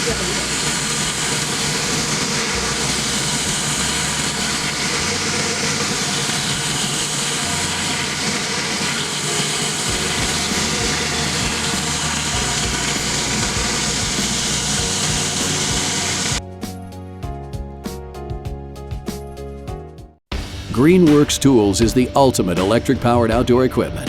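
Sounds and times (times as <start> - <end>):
pressure washer spraying water: 0.0 - 16.4.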